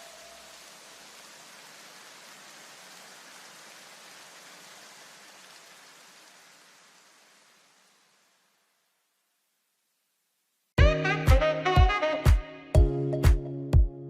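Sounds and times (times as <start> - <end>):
steady even hiss: 0.0 - 10.8.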